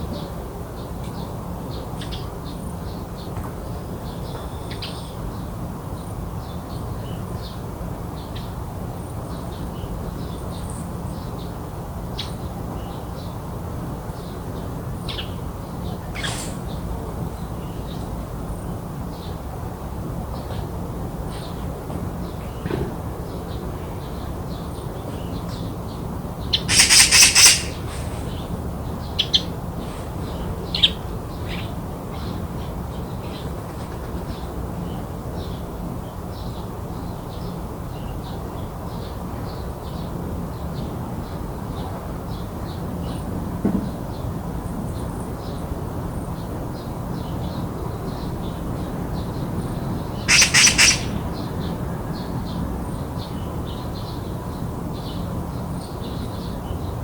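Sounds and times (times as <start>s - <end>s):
magpie chattering: 26.5s - 28.4s, 50.2s - 51.5s
faint high chirps: 50.3s - 51.2s.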